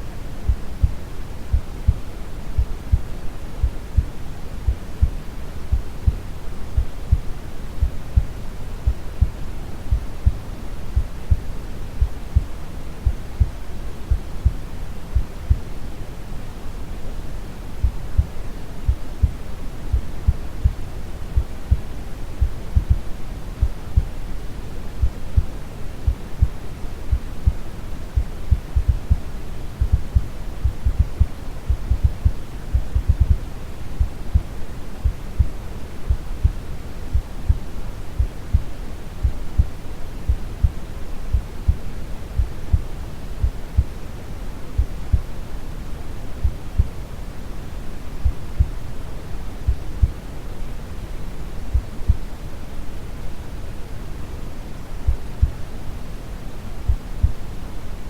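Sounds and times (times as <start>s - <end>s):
heartbeat thumping: 0.5s - 2.0s, 2.6s - 4.1s, 4.7s - 6.2s, 6.8s - 10.4s, 11.0s - 15.7s, 17.8s - 20.8s, 21.4s - 24.2s, 25.0s - 27.6s, 28.2s - 41.8s, 42.4s - 43.9s, 44.8s - 45.3s, 46.4s - 46.9s, 49.7s - 50.2s, 55.1s - 55.6s, 56.9s - 57.4s.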